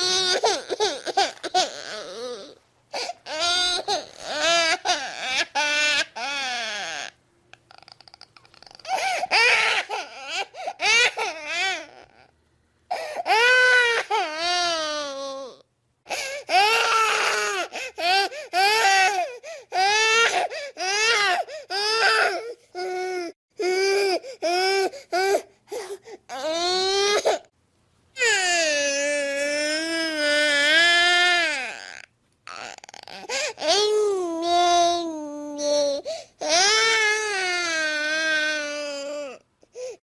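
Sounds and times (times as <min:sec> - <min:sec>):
baby crying: 0:00.0 - 0:12.3, 0:12.9 - 0:27.5, 0:28.2 - 0:40.0.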